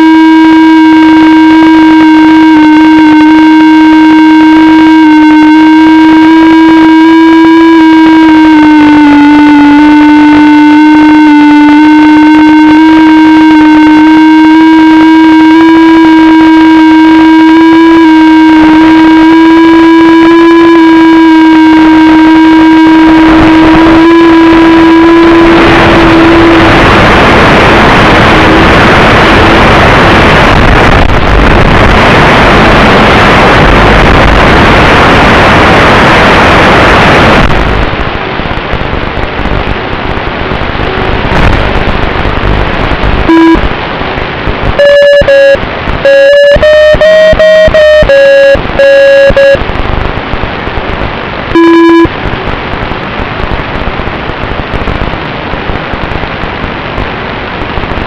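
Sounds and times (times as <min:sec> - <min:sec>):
quadcopter motors humming: 0:00.0 - 0:28.9
loud rushing noise: 0:21.8 - 0:58.0.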